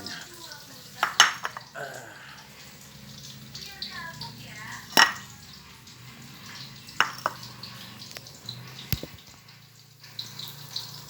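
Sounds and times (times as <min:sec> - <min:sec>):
utensils clinking on dishes: 0:00.0 - 0:02.0, 0:02.6 - 0:09.3.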